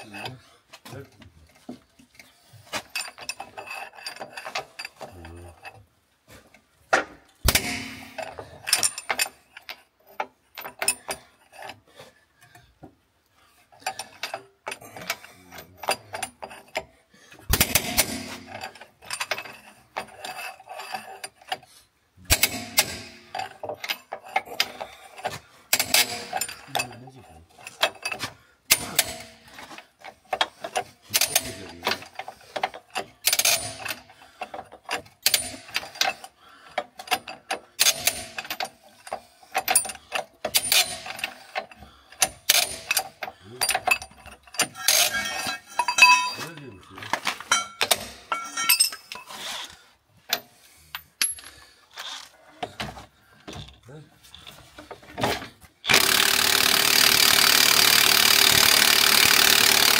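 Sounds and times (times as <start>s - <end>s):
metal knocks and clanks: 6.9s - 9.4s, 17.5s - 20.4s, 22.2s - 36.2s, 39.6s - 49.3s
ratchet clicking: 55.9s - 59.9s.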